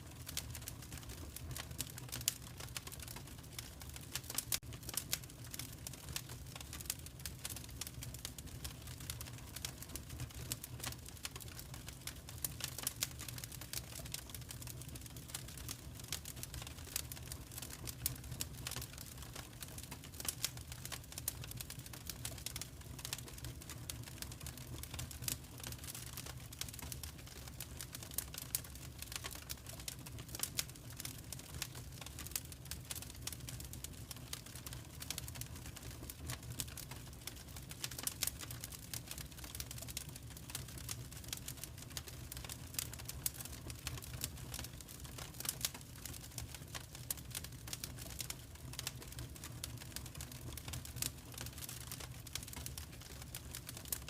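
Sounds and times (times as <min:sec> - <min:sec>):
fireplace fire crackling: 0:00.0 - 0:54.0.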